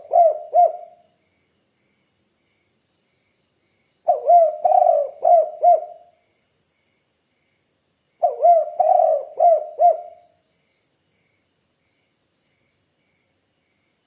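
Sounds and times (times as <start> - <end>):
dove cooing: 0.0 - 1.0, 4.1 - 6.2, 8.2 - 10.3.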